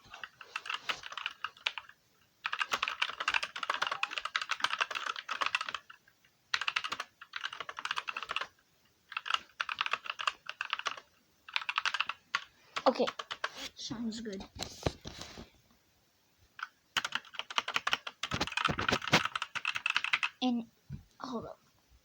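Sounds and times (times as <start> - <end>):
fast keyboard typing: 0.1 - 13.6, 16.6 - 20.4.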